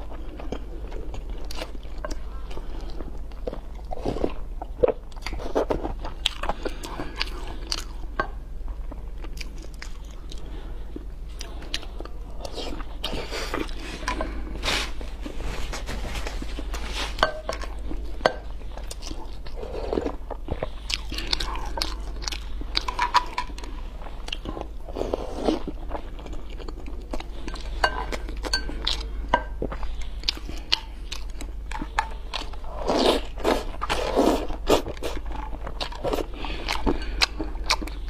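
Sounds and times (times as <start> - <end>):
person chewing noodles: 0.0 - 15.6, 16.4 - 38.0.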